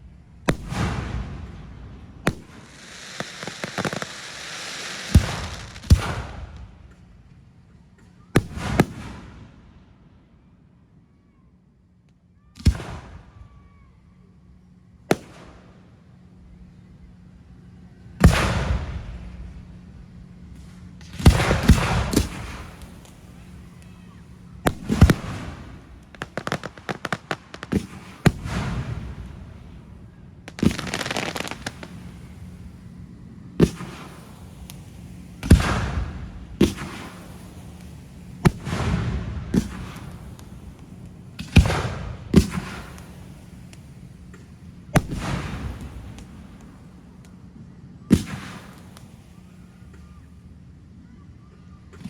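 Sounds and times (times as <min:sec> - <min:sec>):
fireworks bangs with crackle: 0:00.0 - 0:09.9, 0:12.6 - 0:13.6, 0:15.1 - 0:15.9, 0:18.2 - 0:50.5
small firework pops: 0:00.4 - 0:01.6, 0:02.2 - 0:09.6, 0:12.0 - 0:13.5, 0:15.1 - 0:15.8, 0:20.5 - 0:29.7, 0:30.4 - 0:32.4, 0:33.6 - 0:47.5, 0:48.1 - 0:50.2.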